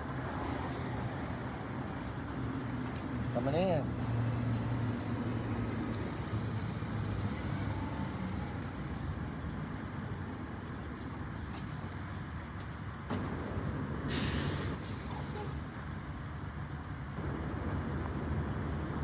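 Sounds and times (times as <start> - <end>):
fire engine running: 0.0 - 19.0
short hiss: 14.1 - 15.6.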